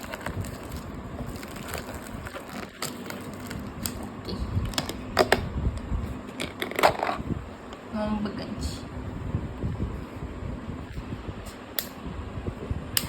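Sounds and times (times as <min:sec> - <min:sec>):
plastic crinkling and clicking: 0:00.0 - 0:04.0.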